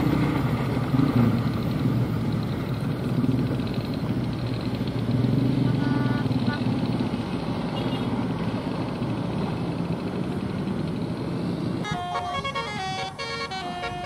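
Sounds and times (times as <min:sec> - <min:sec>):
vehicle engine running: 0:00.0 - 0:14.0
bus musical horn melody: 0:05.6 - 0:06.6, 0:11.8 - 0:14.0.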